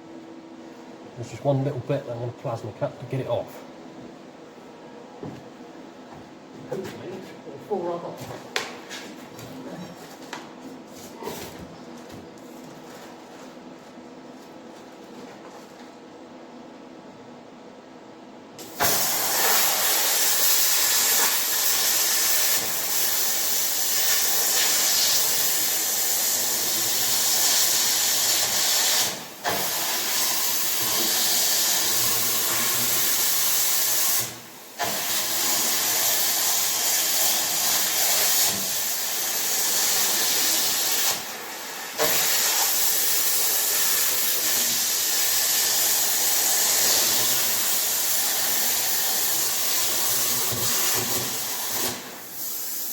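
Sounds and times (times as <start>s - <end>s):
plasma cutter hissing: 18.6s - 52.9s.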